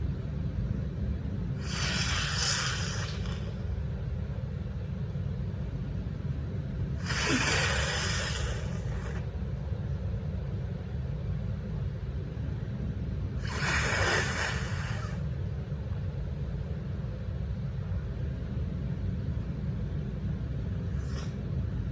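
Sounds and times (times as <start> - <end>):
woman breathing through nose: 1.6 - 3.5.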